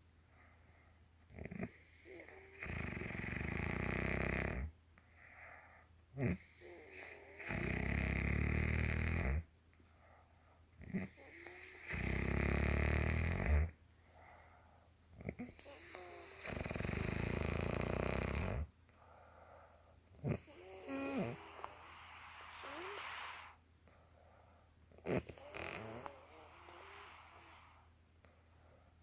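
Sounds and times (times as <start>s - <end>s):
quiet breathing: 0.0s - 8.6s, 9.4s - 12.4s, 13.6s - 29.0s
woman snoring: 1.3s - 4.7s, 6.2s - 9.4s, 10.8s - 13.8s, 15.2s - 18.7s, 20.2s - 23.6s, 25.0s - 27.9s.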